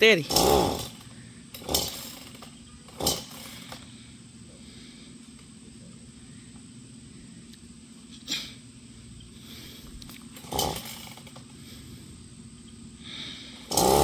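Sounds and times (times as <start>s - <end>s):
chainsaw idling: 0.0s - 5.5s, 9.4s - 12.2s, 13.1s - 14.0s.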